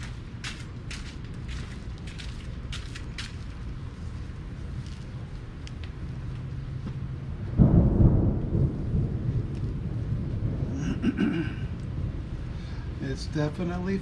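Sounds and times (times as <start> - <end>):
thunder rumbling: 7.2 - 14.0.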